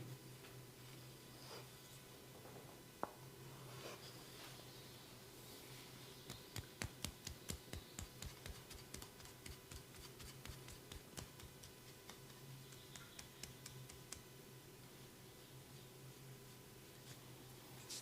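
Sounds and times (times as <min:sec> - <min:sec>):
low steady hum: 0:00.0 - 0:18.0
hands clicking on skin: 0:06.3 - 0:14.3.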